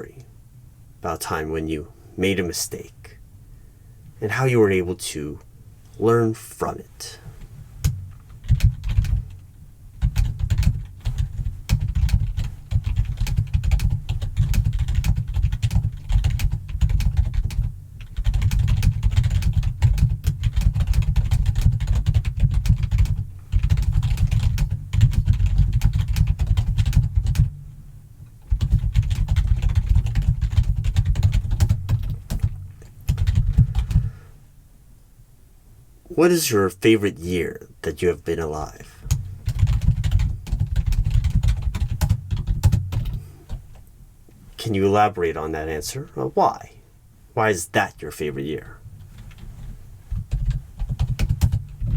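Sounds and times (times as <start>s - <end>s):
keyboard typing: 10.0s - 27.5s, 28.5s - 34.1s, 39.1s - 43.6s, 50.2s - 51.9s.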